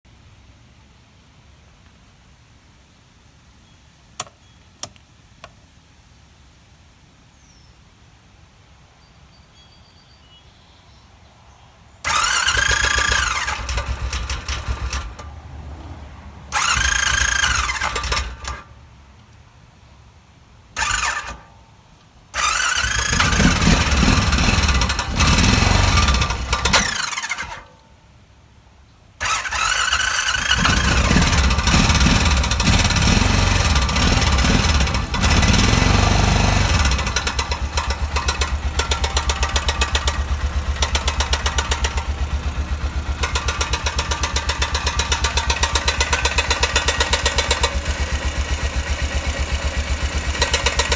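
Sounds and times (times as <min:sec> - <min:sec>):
electric starter whine: 0:12.1 - 0:15.4, 0:16.5 - 0:18.7, 0:20.8 - 0:21.5, 0:22.3 - 0:27.7, 0:29.2 - 0:50.9
engine running with rhythmic ticking: 0:12.1 - 0:19.4, 0:20.8 - 0:27.8, 0:29.2 - 0:50.9.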